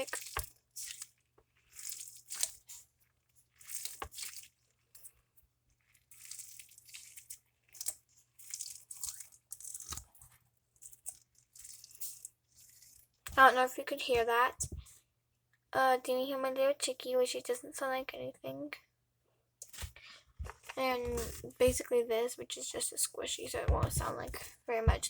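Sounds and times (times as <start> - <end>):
squishy ball crackling squishes: 0.0 - 13.5.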